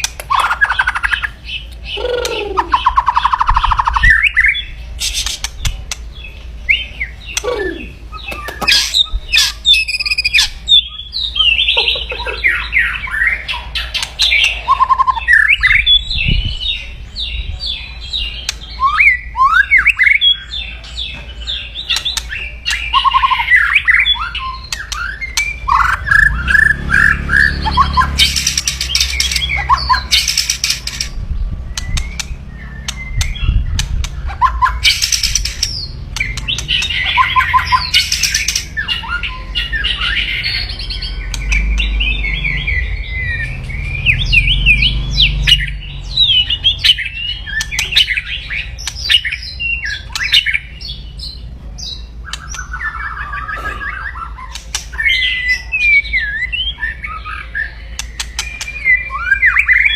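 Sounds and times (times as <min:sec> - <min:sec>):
bird whistling and chattering: 0:00.0 - 0:06.0, 0:06.7 - 0:16.6, 0:21.8 - 0:50.9, 0:51.8 - 0:59.9
harsh rasping bird crackles: 0:30.1 - 0:31.2.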